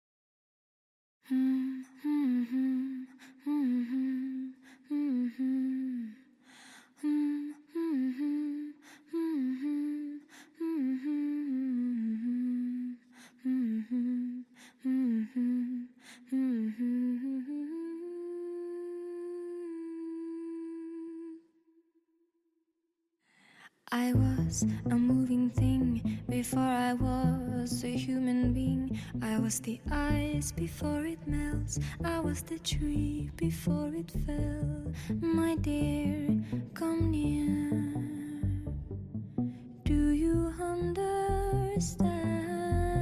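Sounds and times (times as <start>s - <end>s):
quick breaths: 6.4s - 7.0s
person humming a melody: 24.2s - 38.7s, 39.9s - 43.0s.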